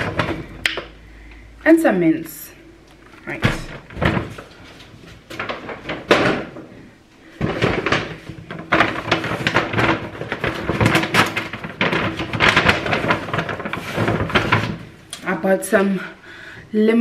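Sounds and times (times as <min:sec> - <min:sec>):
crackly rustling of packaging: 0:00.0 - 0:00.9, 0:02.9 - 0:15.4.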